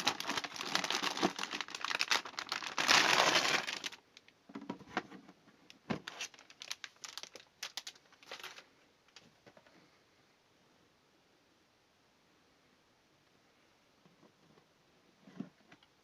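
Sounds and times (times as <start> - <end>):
packaging crinkling: 0.0 - 4.3, 6.0 - 9.2.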